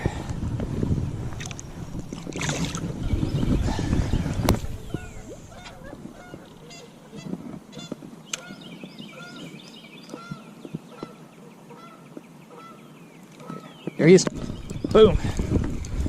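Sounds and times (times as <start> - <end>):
geese honking: 4.8 - 13.7.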